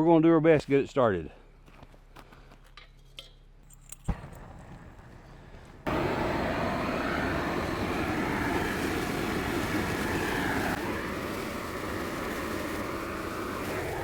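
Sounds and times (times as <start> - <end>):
propane torch flame hissing: 5.8 - 14.0.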